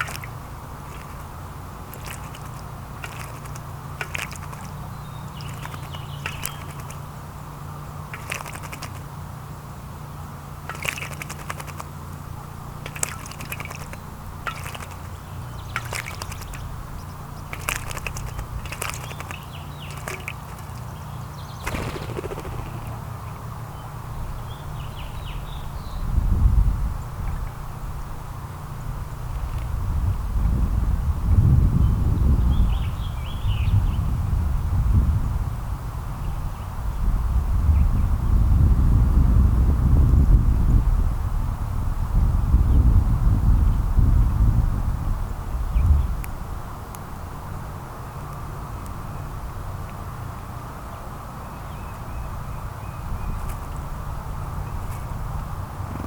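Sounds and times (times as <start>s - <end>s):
small birds chirping: 0.0s - 9.1s, 10.0s - 26.2s
steady low rumble: 21.6s - 26.8s.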